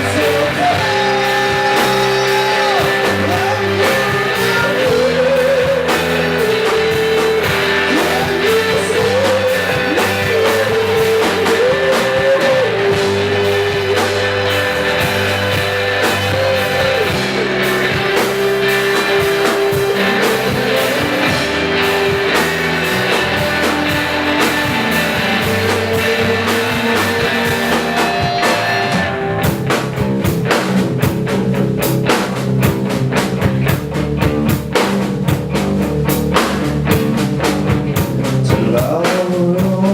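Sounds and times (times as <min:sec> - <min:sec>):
rock music with singing: 0:00.0 - 0:39.9.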